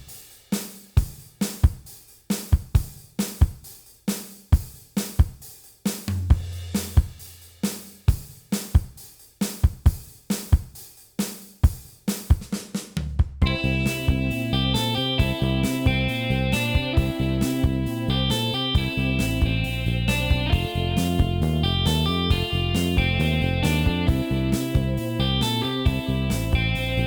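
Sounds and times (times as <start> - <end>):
drum kit beat: 0.0 - 27.0
low bass note: 13.4 - 27.0.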